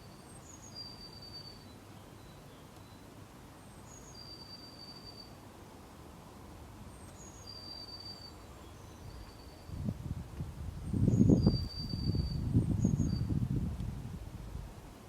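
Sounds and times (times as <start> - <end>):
songbird whistling: 0.4 - 3.0, 3.9 - 5.4, 7.2 - 9.7, 11.1 - 13.3.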